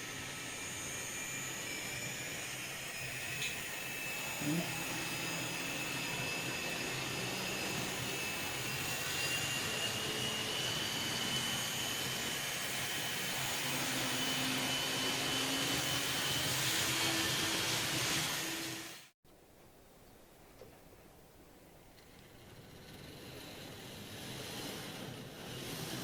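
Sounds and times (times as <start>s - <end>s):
model train motor whine: 0.0s - 19.1s, 22.0s - 26.0s
wheels rolling on rails: 21.8s - 26.0s.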